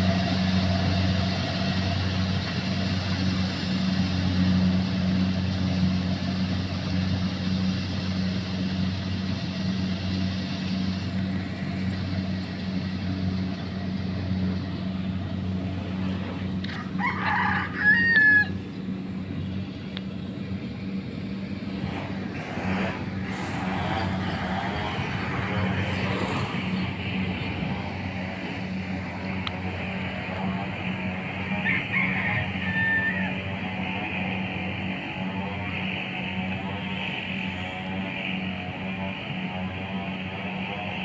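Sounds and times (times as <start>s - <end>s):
harvester engine running: 0.0s - 41.0s
rooster crowing: 16.6s - 18.7s, 31.4s - 34.1s.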